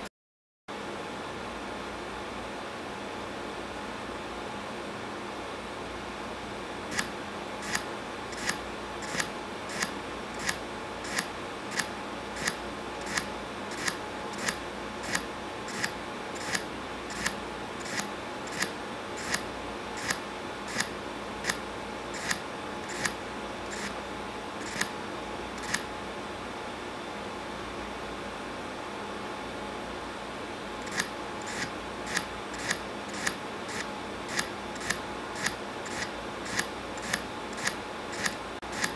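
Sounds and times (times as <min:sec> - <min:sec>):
scissors snipping: 0:06.9 - 0:19.4, 0:24.6 - 0:24.9, 0:30.8 - 0:38.9.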